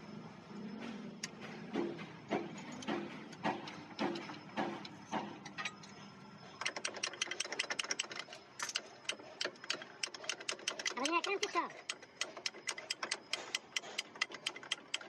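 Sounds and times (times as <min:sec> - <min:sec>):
fast clicks: 0:06.6 - 0:15.0.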